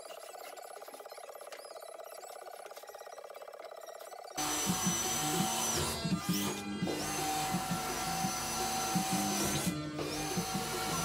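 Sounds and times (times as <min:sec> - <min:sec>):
music with steady beat: 0:04.4 - 0:11.0.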